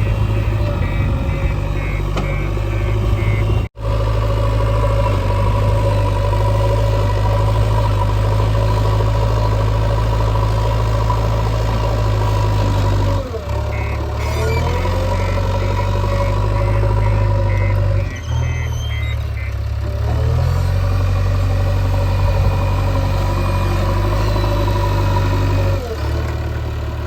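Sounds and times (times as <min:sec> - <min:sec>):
repeated beeping: 0:00.0 - 0:03.7, 0:13.7 - 0:19.6
diesel engine running: 0:00.0 - 0:27.0.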